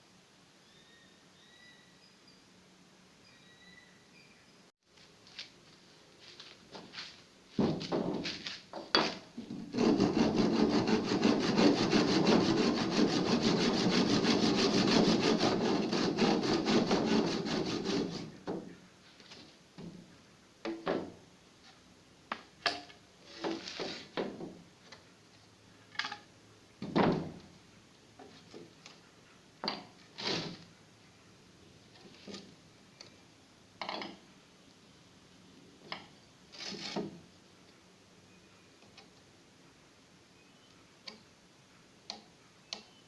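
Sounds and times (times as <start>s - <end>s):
scrapes and knocks: 6.7s - 20.1s, 23.2s - 24.6s, 35.9s - 37.2s
hand saw rasping: 9.6s - 18.4s.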